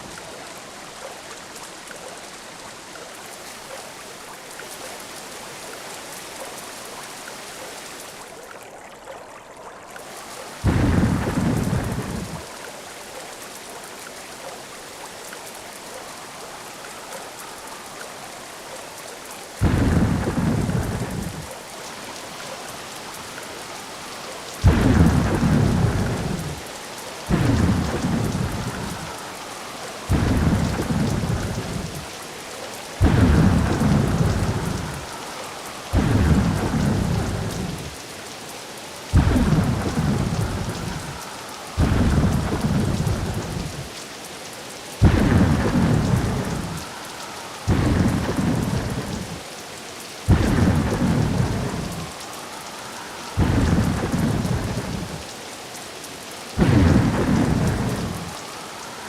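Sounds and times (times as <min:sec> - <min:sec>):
hiss of surf: 0:00.0 - 0:08.4, 0:10.0 - 0:59.0
ocean waves breaking: 0:19.6 - 0:44.0, 0:45.0 - 0:49.4, 0:50.0 - 0:55.2, 0:56.6 - 0:59.0.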